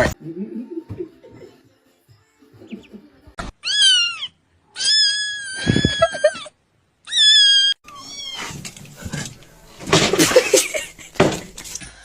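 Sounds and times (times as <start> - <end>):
cat meowing: 3.6 - 6.4, 7.1 - 8.6.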